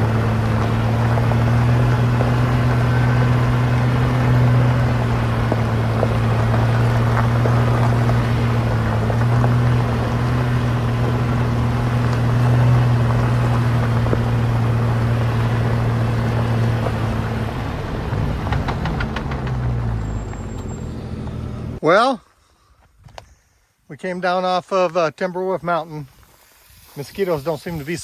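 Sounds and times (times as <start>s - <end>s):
car engine droning: 0.0s - 21.8s.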